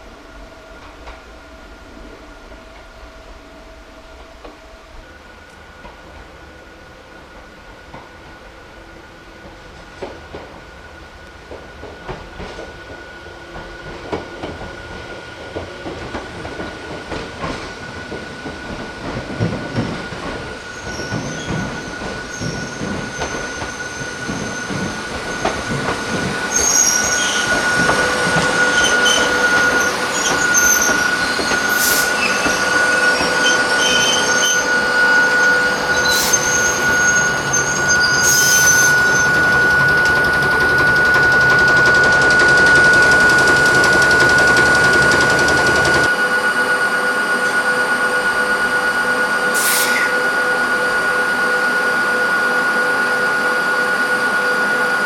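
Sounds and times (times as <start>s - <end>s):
train wheels knocking on rail joints: 11.5s - 33.5s, 38.6s - 46.1s
train wheels squealing: 17.4s - 55.0s.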